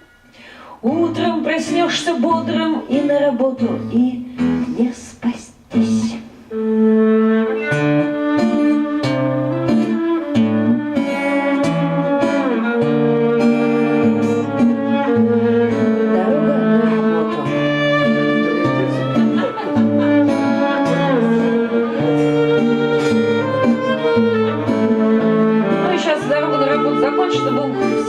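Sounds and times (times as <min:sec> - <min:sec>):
acoustic guitar accompaniment: 0:00.0 - 0:28.0
violin melody with sliding notes: 0:05.8 - 0:28.0.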